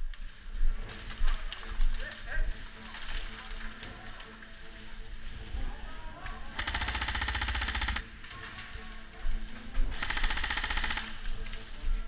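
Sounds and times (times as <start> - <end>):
airsoft gun automatic burst: 6.6 - 8.1, 10.0 - 11.2.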